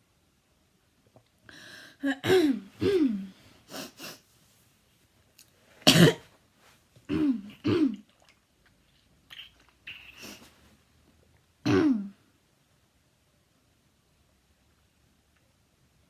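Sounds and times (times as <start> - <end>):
child coughing: 2.0 - 3.2, 5.9 - 6.3, 7.1 - 8.0, 11.6 - 12.2.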